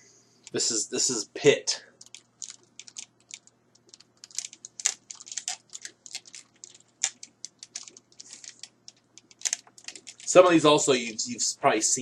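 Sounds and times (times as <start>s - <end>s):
plastic toys clattering: 2.0s - 10.4s.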